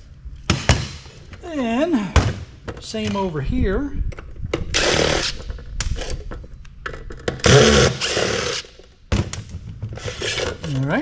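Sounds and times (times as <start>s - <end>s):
power screwdriver running: 4.8s - 5.4s, 7.4s - 8.7s.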